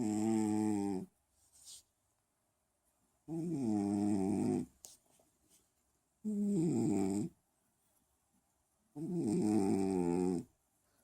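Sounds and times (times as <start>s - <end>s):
cat snoring: 3.3s - 4.7s, 6.3s - 7.3s, 9.0s - 10.5s.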